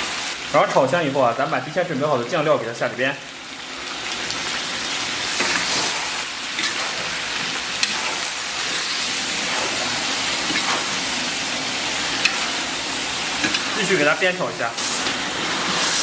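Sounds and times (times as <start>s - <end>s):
food sizzling in a wok: 0.0s - 16.0s.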